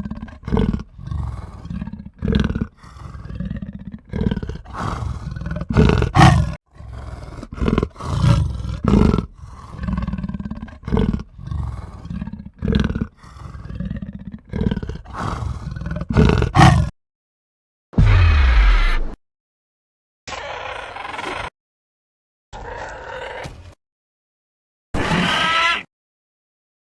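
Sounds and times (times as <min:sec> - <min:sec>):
large animal roaring grunts: 0:00.0 - 0:16.9.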